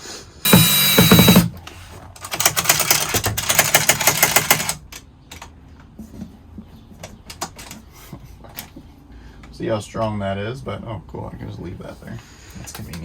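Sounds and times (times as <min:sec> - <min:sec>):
power tool whining: 0:00.4 - 0:01.6
fast mechanical clicks: 0:00.5 - 0:05.5.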